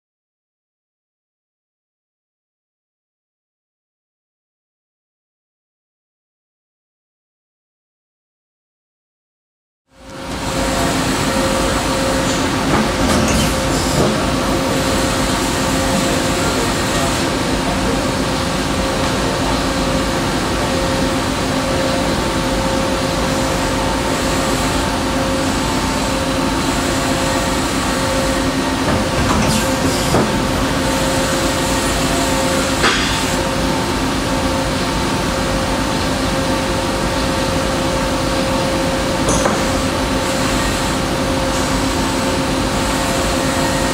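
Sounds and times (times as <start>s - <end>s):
lathe humming and whining: 10.0s - 43.9s.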